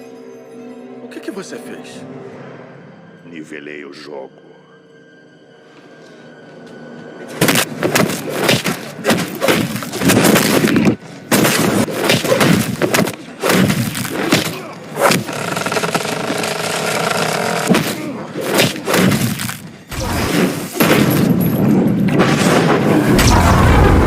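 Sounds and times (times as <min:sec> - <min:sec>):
punches and crashing impacts: 0:07.4 - 0:15.3, 0:17.7 - 0:24.0.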